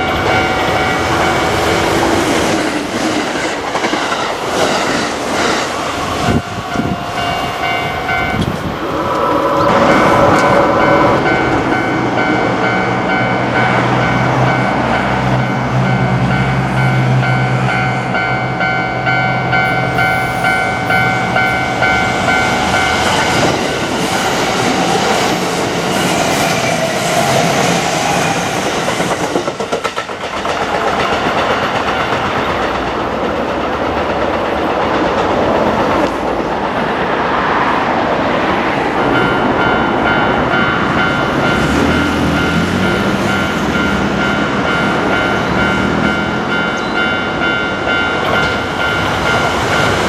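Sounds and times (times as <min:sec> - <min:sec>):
level crossing bell ringing: 0:00.0 - 0:02.0, 0:06.3 - 0:08.4, 0:09.8 - 0:24.6, 0:39.2 - 0:50.0
train wheels on rails: 0:00.0 - 0:50.0.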